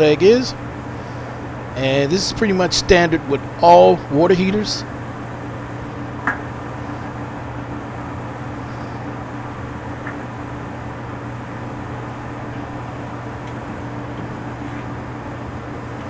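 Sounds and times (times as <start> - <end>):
background hiss: 0.0 - 6.0
low machine hum: 0.0 - 16.0.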